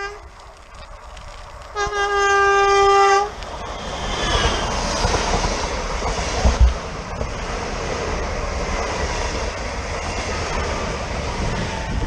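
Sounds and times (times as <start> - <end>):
train horn blast: 1.7 - 3.3
train rushing past: 1.7 - 12.0.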